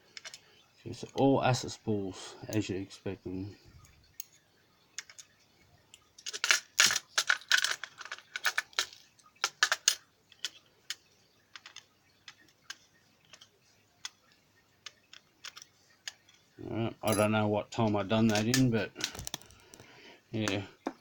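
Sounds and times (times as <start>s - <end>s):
metal lock parts clicking: 6.2s - 11.0s, 14.8s - 17.3s, 18.2s - 19.6s.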